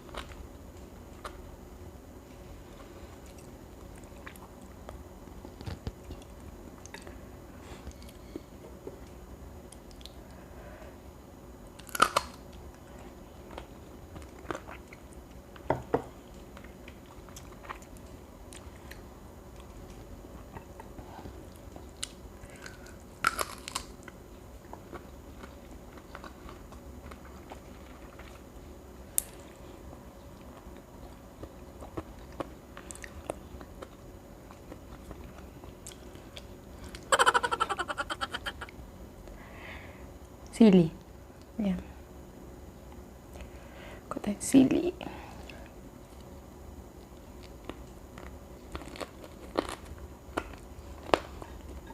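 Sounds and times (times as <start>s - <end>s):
chewing and crunching: 2.7s - 7.2s, 11.8s - 15.7s, 16.3s - 38.8s, 47.0s - 51.9s.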